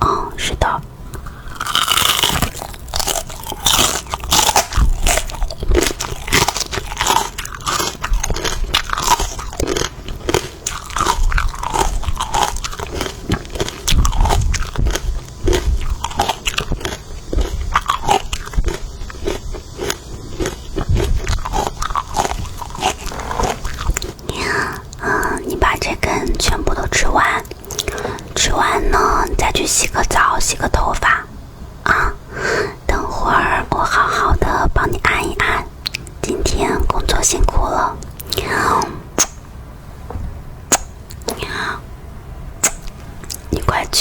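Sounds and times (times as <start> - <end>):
crunchy chewing of raw pepper: 1.2 - 28.7, 42.6 - 43.8.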